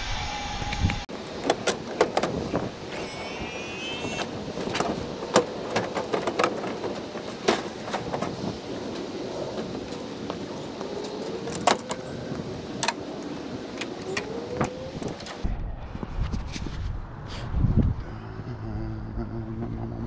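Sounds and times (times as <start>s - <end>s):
low rumble: 0.0s - 1.1s, 15.4s - 20.0s.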